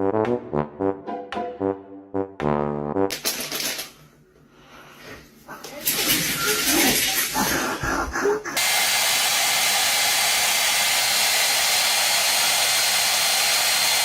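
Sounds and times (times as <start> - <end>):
voice-like sounds: 5.5 - 8.6.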